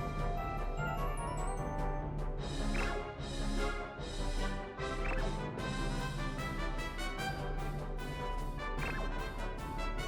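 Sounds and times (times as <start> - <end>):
instrumental background music: 0.0 - 10.0.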